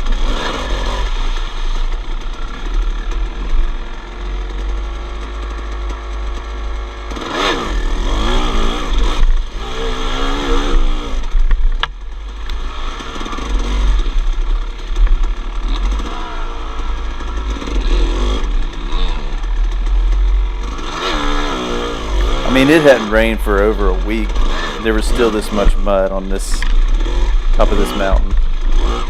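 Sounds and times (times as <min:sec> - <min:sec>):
dirt bike engine revving: 0:00.0 - 0:29.0.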